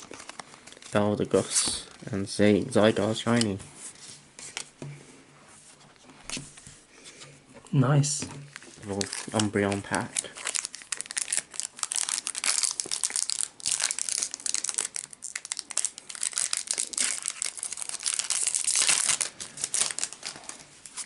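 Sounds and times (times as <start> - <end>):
foil wrapper crinkling: 8.5 - 21.0
foil pack tearing: 8.9 - 20.6.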